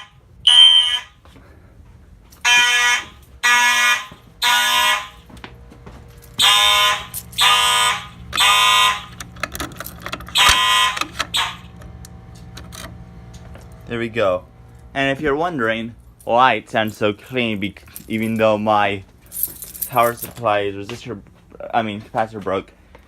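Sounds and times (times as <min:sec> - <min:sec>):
fire alarm horns buzzing: 0:00.0 - 0:01.4, 0:02.4 - 0:16.3.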